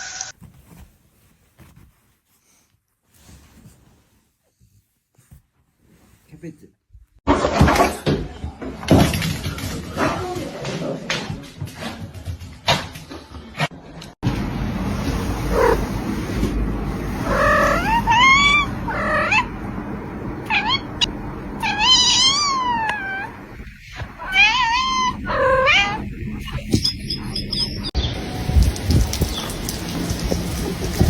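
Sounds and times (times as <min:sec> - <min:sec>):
cat meowing: 0:17.2 - 0:19.5, 0:20.5 - 0:20.9, 0:21.6 - 0:23.4, 0:24.2 - 0:26.1.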